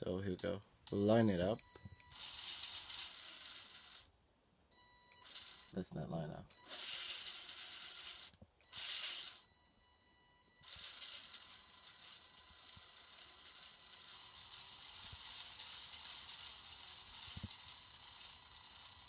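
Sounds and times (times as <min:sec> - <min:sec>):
electric motor whine: 0:02.0 - 0:04.1, 0:06.5 - 0:19.0.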